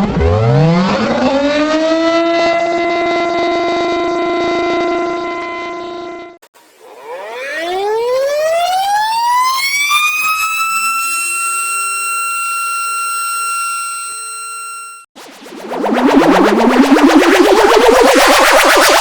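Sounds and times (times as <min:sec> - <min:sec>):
tornado siren wailing: 0:00.2 - 0:15.0.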